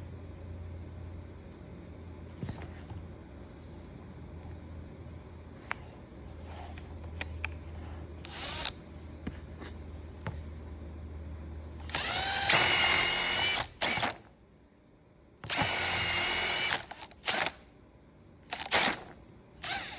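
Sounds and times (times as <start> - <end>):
power drill motor spinning: 8.2 - 8.8, 11.8 - 14.3, 15.4 - 17.6, 18.5 - 19.9.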